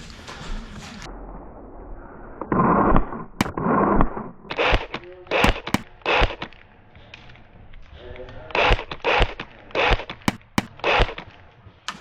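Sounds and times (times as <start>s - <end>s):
airsoft guns firing: 5.5s - 5.8s.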